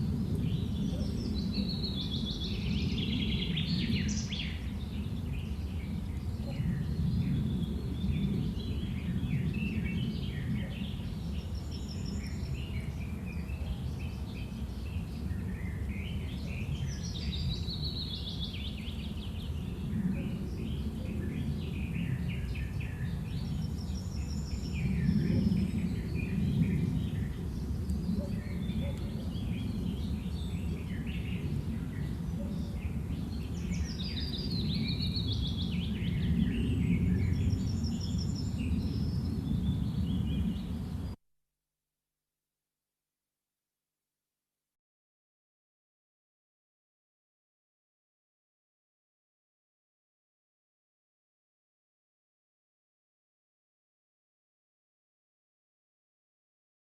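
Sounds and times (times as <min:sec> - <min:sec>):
small birds chirping: 0:00.0 - 0:41.2
steady low rumble: 0:00.0 - 0:41.2.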